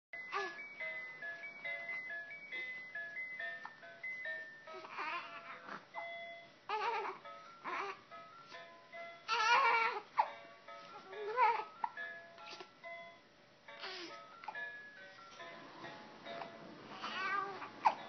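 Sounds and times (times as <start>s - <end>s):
toy chiming melody: 0.2s - 18.0s
baby whimpering cries: 4.7s - 6.0s, 6.7s - 8.0s, 9.3s - 12.7s, 13.8s - 14.6s, 16.4s - 18.0s.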